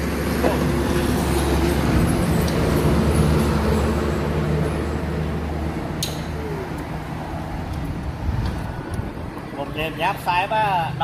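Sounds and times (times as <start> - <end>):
sharp click: 6.0 - 6.3.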